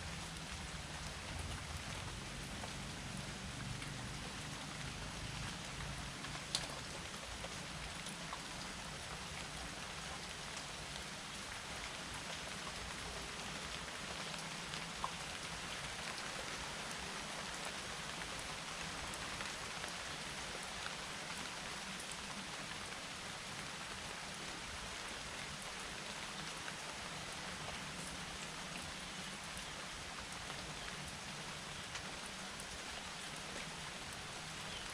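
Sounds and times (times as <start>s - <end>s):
steady rain hiss: 0.0s - 34.9s
raindrops ticking: 0.2s - 11.4s, 12.2s - 16.2s.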